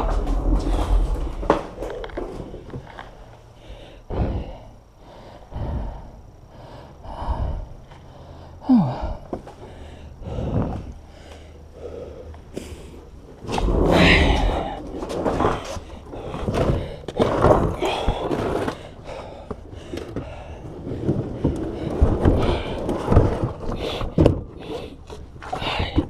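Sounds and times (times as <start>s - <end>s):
boxes knocking and scraping: 0.0s - 3.2s, 13.4s - 26.0s
man breathing heavily: 0.0s - 26.0s.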